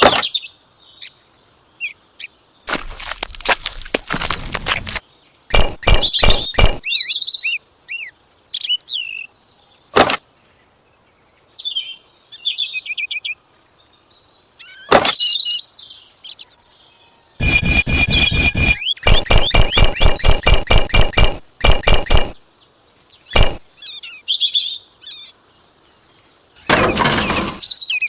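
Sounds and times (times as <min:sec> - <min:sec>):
birds chirping: 0:01.8 - 0:07.5, 0:17.4 - 0:24.3
sharp knocks: 0:05.5 - 0:06.8, 0:17.4 - 0:22.4, 0:23.4 - 0:23.6.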